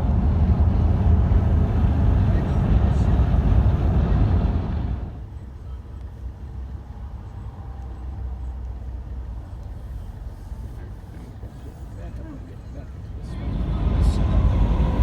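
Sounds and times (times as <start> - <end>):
heavy truck passing: 0.0 - 5.2, 9.3 - 15.0
low rumble of traffic: 0.0 - 15.0.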